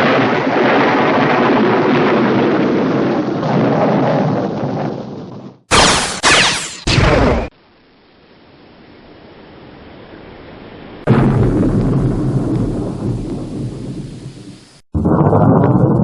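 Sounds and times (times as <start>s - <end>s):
thunder rumbling and clapping: 0.0s - 5.5s, 11.1s - 16.0s.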